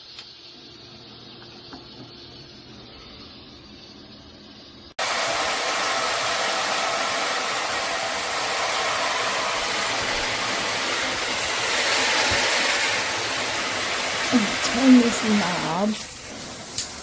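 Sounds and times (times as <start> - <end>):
shower head spraying water: 5.0 - 17.0.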